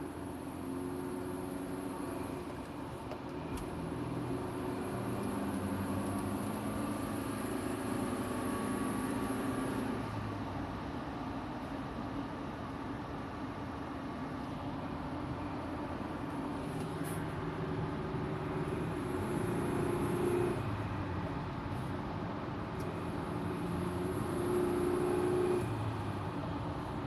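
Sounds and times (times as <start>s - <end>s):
car engine revving: 3.9s - 10.0s, 17.4s - 20.7s, 22.8s - 26.0s.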